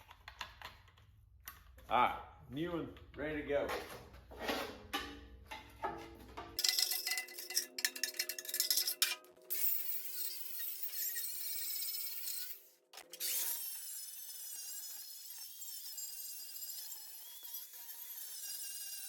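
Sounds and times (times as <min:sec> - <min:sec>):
angle grinder grinding steel: 0:06.6 - 0:19.0.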